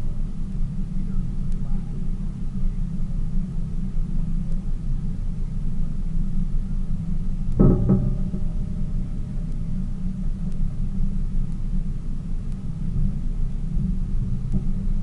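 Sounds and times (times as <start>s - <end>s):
boat engine rumbling: 7.6s - 12.4s.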